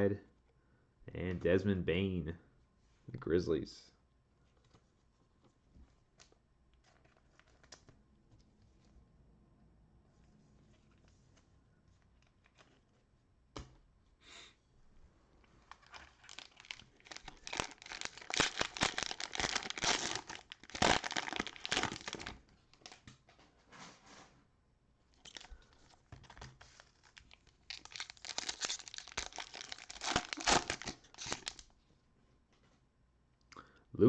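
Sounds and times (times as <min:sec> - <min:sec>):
cellophane wrapper crinkling: 0:15.6 - 0:23.1, 0:25.1 - 0:31.8.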